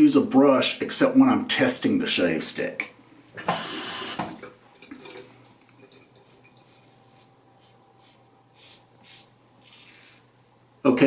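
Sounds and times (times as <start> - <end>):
razor scraping on skin: 6.7 - 10.3.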